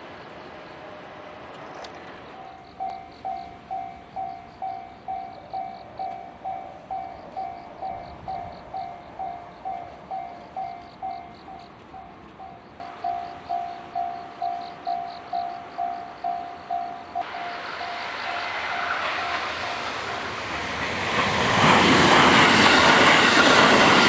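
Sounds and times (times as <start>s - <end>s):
train rushing past: 0.0s - 24.0s
level crossing warning bell ringing: 2.2s - 20.2s.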